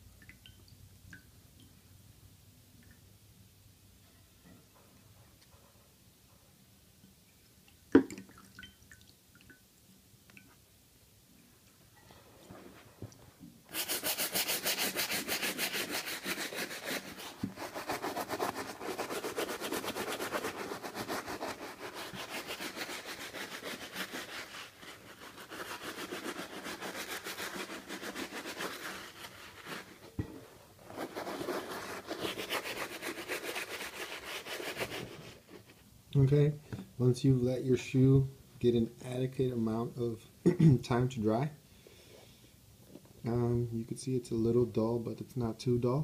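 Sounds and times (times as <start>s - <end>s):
brush scrubbing a wet sneaker: 13.7s - 35.8s.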